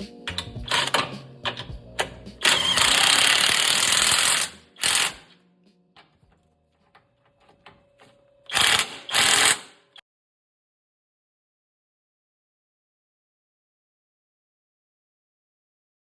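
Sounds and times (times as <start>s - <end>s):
power tool running on bolts: 2.4s - 5.3s, 8.5s - 10.0s.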